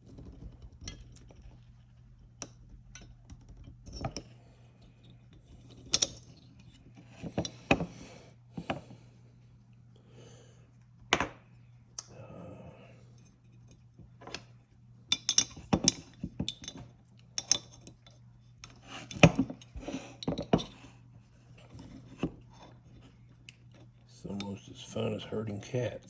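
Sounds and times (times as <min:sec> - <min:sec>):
metal tools clicking and tapping: 0:02.4 - 0:04.3, 0:15.1 - 0:20.8, 0:23.4 - 0:24.6.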